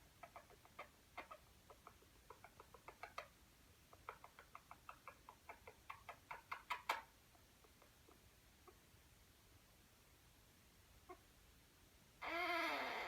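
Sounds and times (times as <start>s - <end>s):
parrot snoring with clicks and squeaks: 12.2s - 13.0s.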